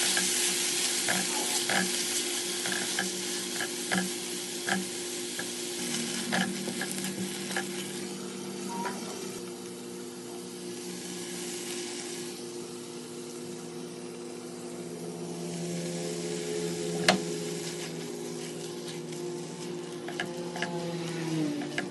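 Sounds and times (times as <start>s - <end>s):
food sizzling in frying pan: 0.0s - 21.9s
utensil clicking against pan: 1.0s - 2.0s, 2.6s - 5.5s
low hum: 5.3s - 21.9s.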